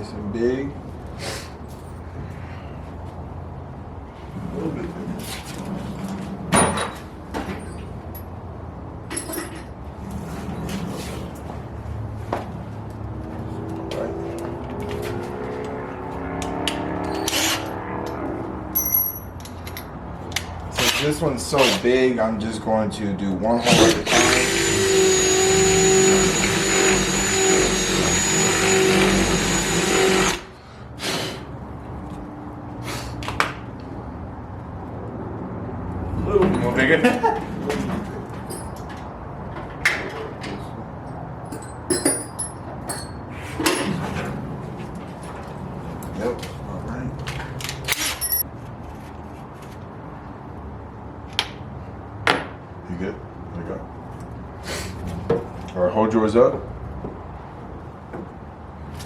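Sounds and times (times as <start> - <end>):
cordless drill drilling: 23.7 - 30.5.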